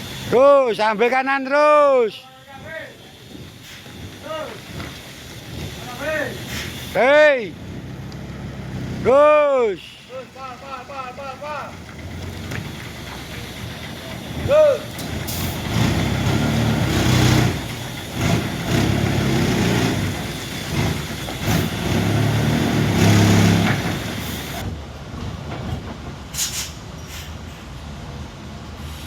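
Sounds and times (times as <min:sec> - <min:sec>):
diesel engine revving: 0:03.3 - 0:24.8.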